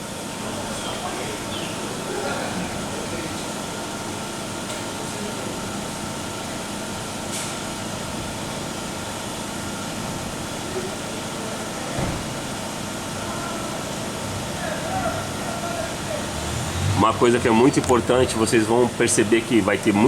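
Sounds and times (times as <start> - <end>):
car engine idling: 0.0 - 20.0
low thump: 12.0 - 12.4.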